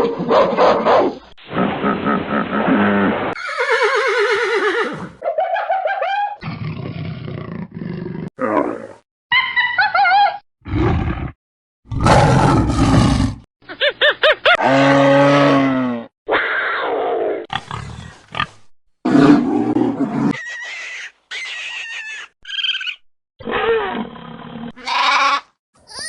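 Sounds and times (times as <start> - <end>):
animal roars and growls: 6.4 - 9.0, 10.6 - 13.5, 14.6 - 20.6, 23.4 - 24.8
wavering pitched animal cries: 20.3 - 23.9.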